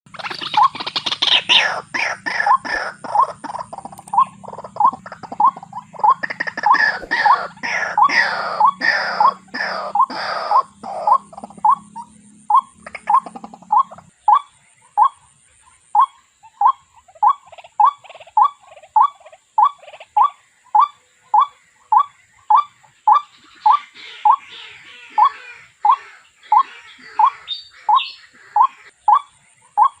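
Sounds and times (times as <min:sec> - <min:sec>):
harsh scattered bird calls: 0:00.1 - 0:30.0
bird repeating short note: 0:06.6 - 0:10.6.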